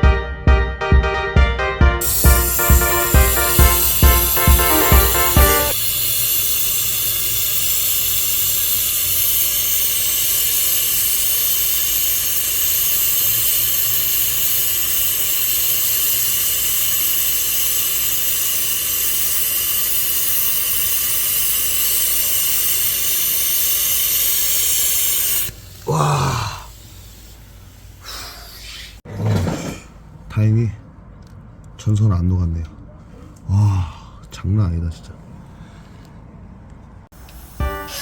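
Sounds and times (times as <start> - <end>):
torch flame hissing: 2.0 - 29.1, 37.1 - 38.0.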